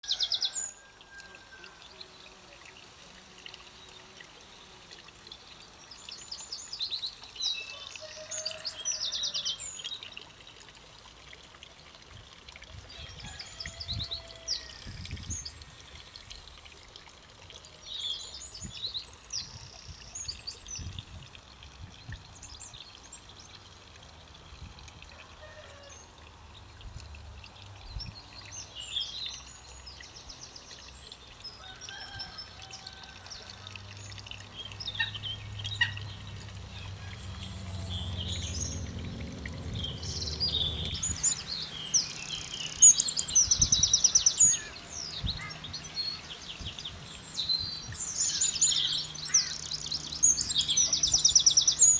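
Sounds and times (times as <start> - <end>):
songbirds singing: 25.5 - 51.9
low rumbles: 35.2 - 41.9.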